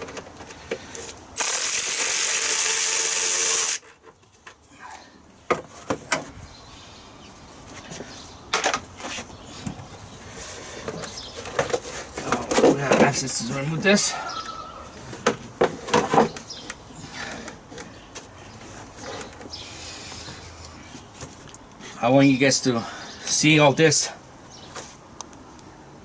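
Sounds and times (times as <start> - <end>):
power tool running: 1.4 - 3.8.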